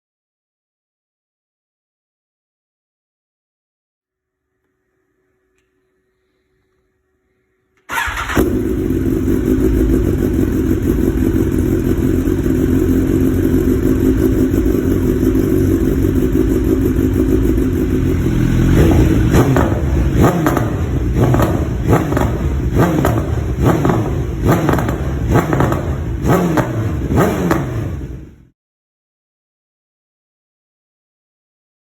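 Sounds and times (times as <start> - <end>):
motorcycle engine idling and revving: 7.9 - 28.5.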